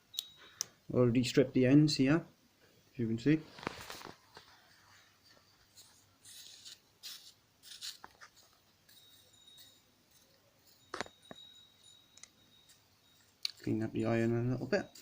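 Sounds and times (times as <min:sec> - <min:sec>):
faint high whine: 0:00.0 - 0:15.0
handling small parts and wires: 0:03.5 - 0:15.0.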